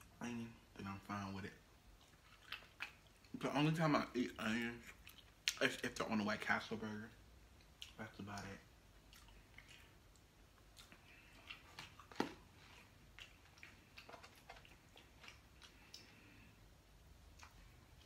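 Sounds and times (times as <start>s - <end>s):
person chewing food: 1.7s - 3.4s, 4.6s - 5.6s, 7.5s - 18.0s.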